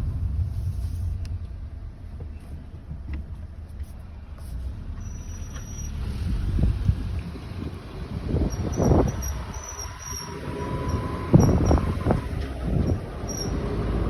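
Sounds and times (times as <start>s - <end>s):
vehicle rumble: 0.0s - 14.0s
squeaking wheel: 5.0s - 6.2s, 8.4s - 13.9s.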